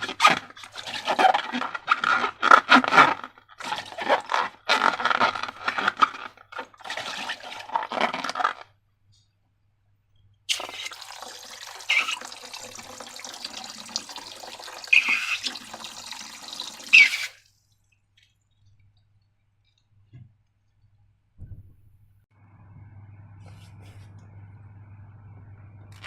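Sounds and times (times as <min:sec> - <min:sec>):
liquid slime pouring and splashing: 0:00.0 - 0:08.7, 0:10.5 - 0:18.6.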